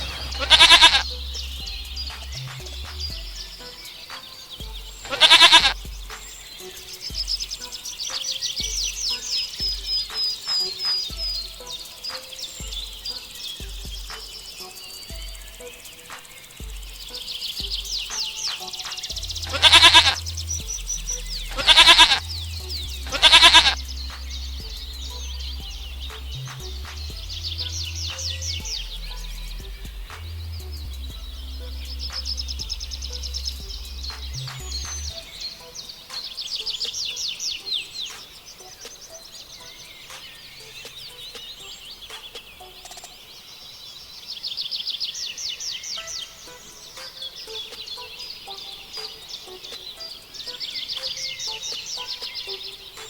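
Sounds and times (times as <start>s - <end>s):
goat bleating: 0.0s - 1.0s, 5.1s - 5.8s, 19.5s - 20.2s, 21.5s - 22.2s, 23.1s - 23.8s
bird trill of falling notes: 0.0s - 43.2s
songbirds chirping: 0.0s - 53.0s.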